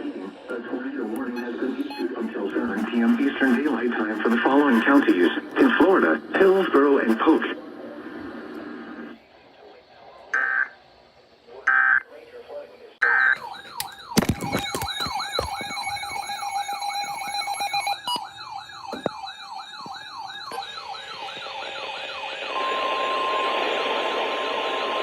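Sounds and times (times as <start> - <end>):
radio static: 0.0 - 13.6
electronic siren sweep: 13.0 - 25.0.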